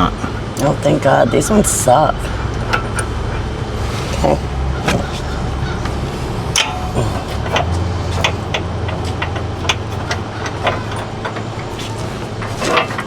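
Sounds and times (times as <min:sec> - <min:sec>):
steady low hum: 0:00.0 - 0:13.0
hand tools clinking on metal: 0:06.5 - 0:13.0.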